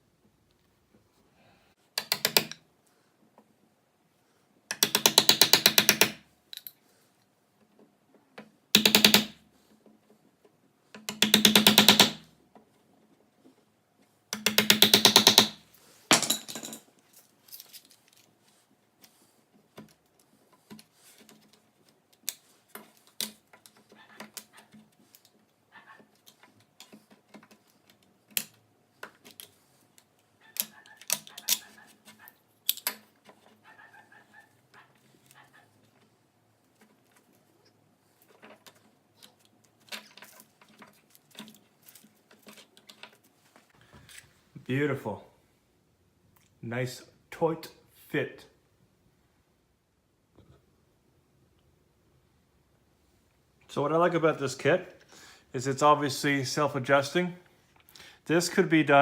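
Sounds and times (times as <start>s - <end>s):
impact driver hammering: 4.7s - 6.2s, 8.8s - 9.4s, 11.1s - 12.2s, 14.4s - 15.6s.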